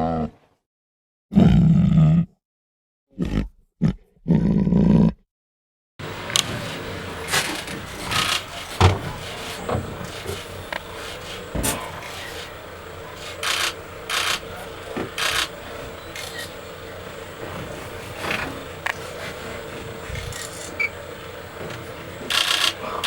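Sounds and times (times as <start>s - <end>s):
faint steady hum: 6.0s - 23.0s
scraping and rustling: 6.0s - 23.0s.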